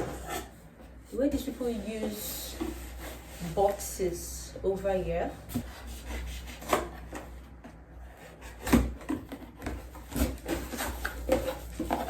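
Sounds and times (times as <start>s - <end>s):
cardboard box rubbing and scraping: 0.0s - 3.9s.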